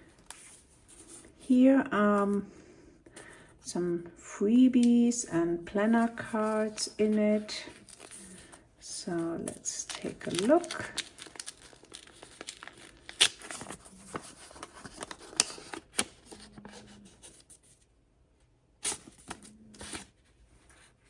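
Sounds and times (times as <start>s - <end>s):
packaging tearing and rustling: 7.7s - 8.6s, 9.4s - 17.8s.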